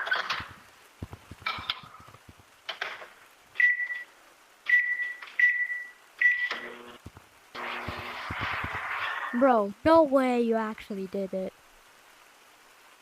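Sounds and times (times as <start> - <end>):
microwave keypad beeping: 4.7 - 6.8.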